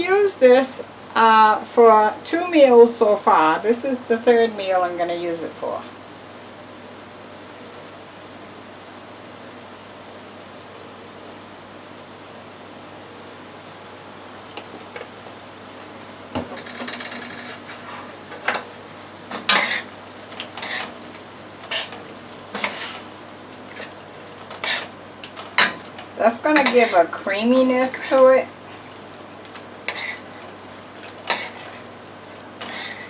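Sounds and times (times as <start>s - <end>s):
spoon stirring and scraping a pot: 16.5s - 18.6s, 19.3s - 33.0s.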